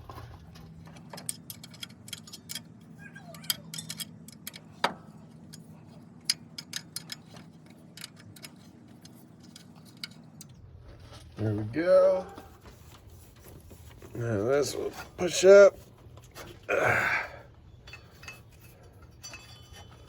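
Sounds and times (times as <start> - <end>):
ratchet wrench clicking: 1.2 - 2.7, 3.4 - 4.9, 6.2 - 10.2
light metal clinks: 17.7 - 20.0.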